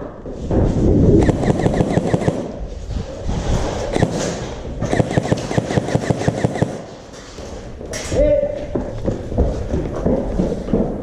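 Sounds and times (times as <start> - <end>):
airsoft guns firing full-auto: 1.2 - 2.5, 4.9 - 6.9.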